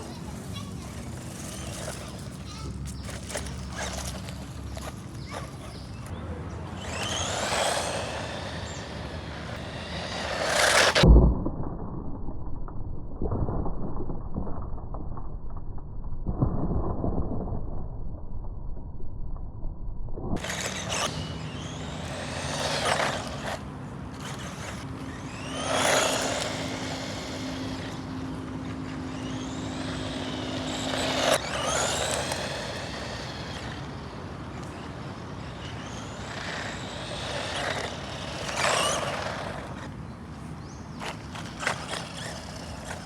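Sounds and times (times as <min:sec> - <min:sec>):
electric motor whining: 0:00.0 - 0:11.0, 0:20.4 - 0:43.0
tyre and drivetrain noise: 0:00.0 - 0:11.0, 0:20.4 - 0:43.0.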